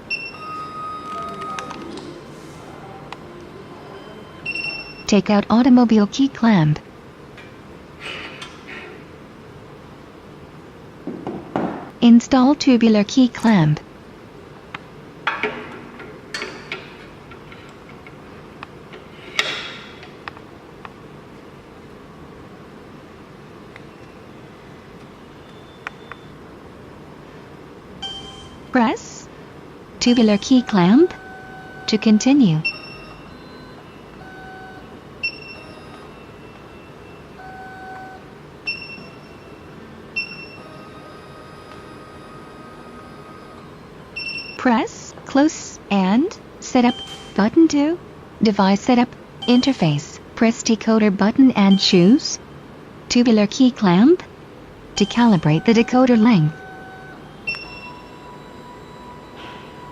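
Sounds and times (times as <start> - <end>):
steady low hum: 1.8 - 59.9
high-pitched touchscreen beeps: 3.9 - 5.3, 30.0 - 39.6, 43.1 - 44.7, 46.8 - 47.6, 49.4 - 50.1, 51.6 - 52.4, 55.0 - 59.9.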